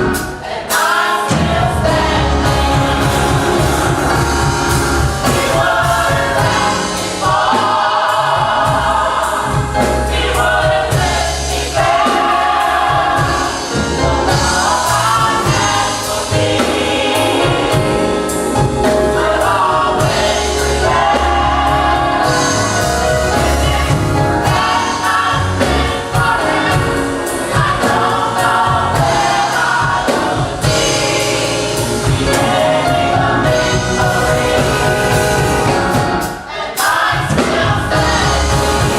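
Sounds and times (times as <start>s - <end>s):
gospel choir singing: 0.0s - 38.9s
steady drum beat: 0.0s - 38.9s
heavy bass line: 1.4s - 6.9s.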